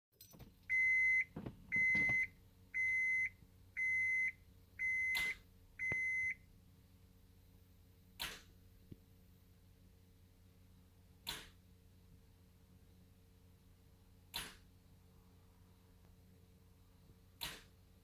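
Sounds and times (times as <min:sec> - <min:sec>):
car warning chime beeping: 0:00.7 - 0:06.4
clicks: 0:01.2 - 0:02.3, 0:05.1 - 0:06.1.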